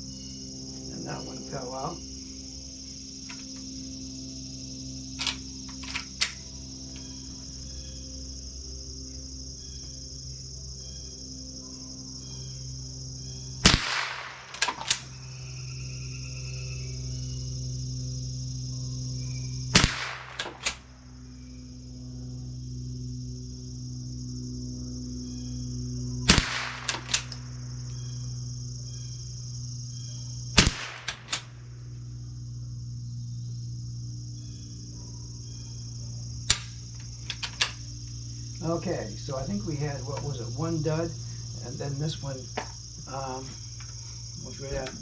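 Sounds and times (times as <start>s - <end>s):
insects buzzing: 0.0s - 45.0s
rifle action clicks: 5.2s - 6.4s, 13.7s - 15.2s, 19.8s - 20.9s, 26.3s - 27.5s, 30.6s - 31.6s, 36.5s - 37.8s
light clicks: 5.2s - 7.1s, 13.7s - 15.1s, 26.3s - 27.5s, 30.6s - 31.5s, 36.4s - 38.2s
rifle shots: 13.6s - 15.2s, 19.7s - 21.0s, 26.3s - 27.5s, 30.6s - 31.6s, 36.5s - 36.8s.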